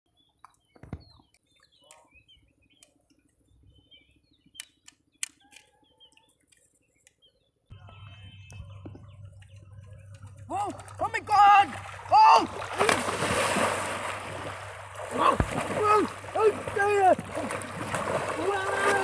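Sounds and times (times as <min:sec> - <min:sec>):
birds chirping faintly: 0:00.1 - 0:12.4
sharp clicks: 0:04.6 - 0:07.2
steady low hum with noisy wash: 0:08.1 - 0:18.3.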